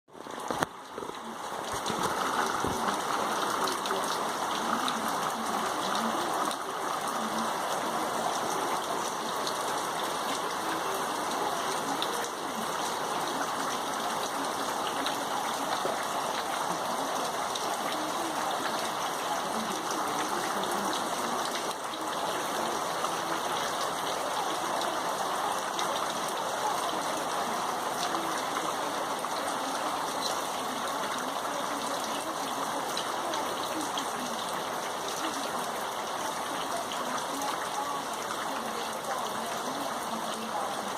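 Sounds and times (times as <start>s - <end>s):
raindrop ticks: 0.1s - 32.2s
steady rain: 0.1s - 40.9s.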